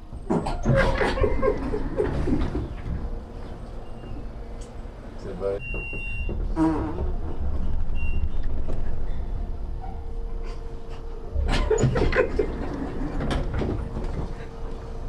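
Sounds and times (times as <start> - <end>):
elevator car rumbling: 0.0 - 15.0.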